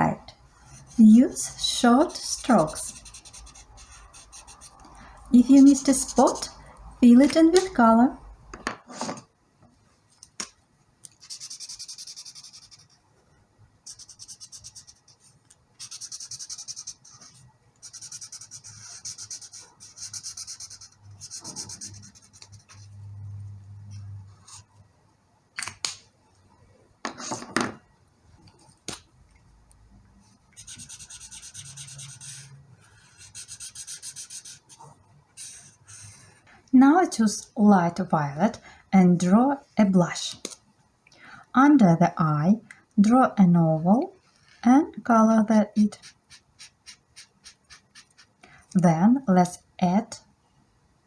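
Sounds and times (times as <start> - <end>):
colouring tool scrubbing on paper: 45.9 - 48.4.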